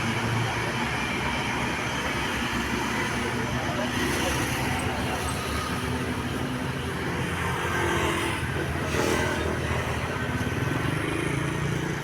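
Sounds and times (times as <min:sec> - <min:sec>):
traffic noise: 0:00.0 - 0:12.0.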